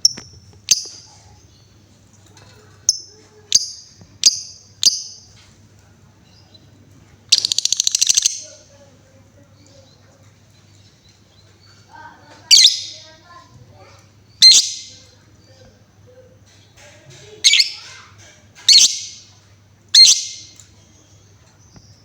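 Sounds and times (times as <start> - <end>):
bird high chirps: 2.9 - 5.4, 7.3 - 8.7, 10.7 - 13.2, 14.3 - 15.2, 17.4 - 18.0, 18.6 - 22.0
bird rattling trill: 7.3 - 8.6.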